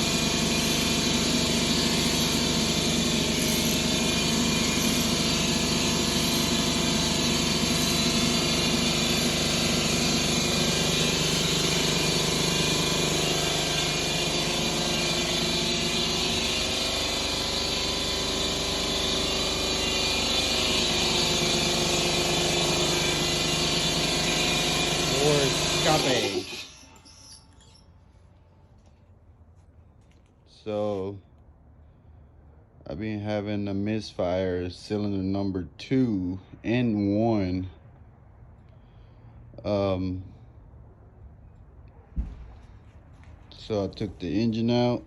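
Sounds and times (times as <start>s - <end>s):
engine running steadily: 0.0s - 26.7s.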